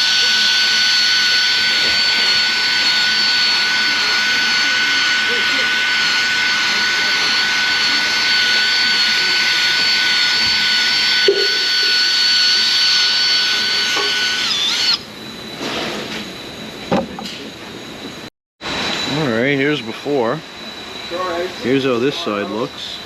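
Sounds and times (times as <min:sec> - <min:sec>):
electric power tool whining: 0:00.0 - 0:15.6.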